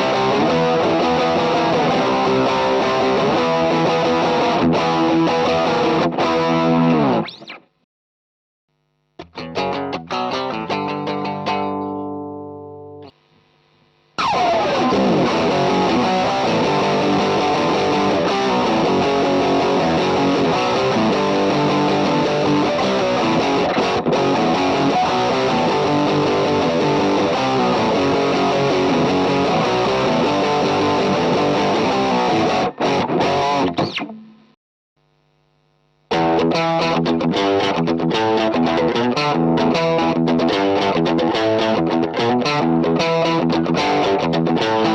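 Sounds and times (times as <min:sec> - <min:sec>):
overdriven electric guitar: 0:00.0 - 0:07.8, 0:09.0 - 0:44.9.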